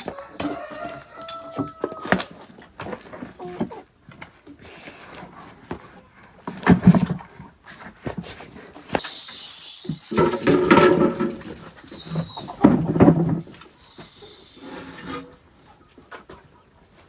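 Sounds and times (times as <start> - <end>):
animal calling: 9.0 - 15.9
knocks and clatter: 10.2 - 11.7.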